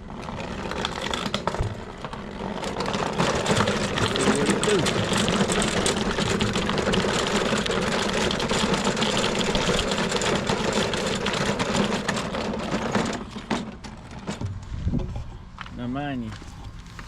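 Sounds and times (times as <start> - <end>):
lawnmower engine running: 0.0 - 17.0.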